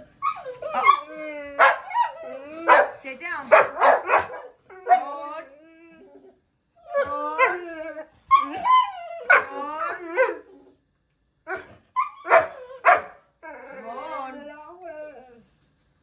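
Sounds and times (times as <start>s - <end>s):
dog barking and whining: 0.0s - 10.8s, 11.5s - 15.4s.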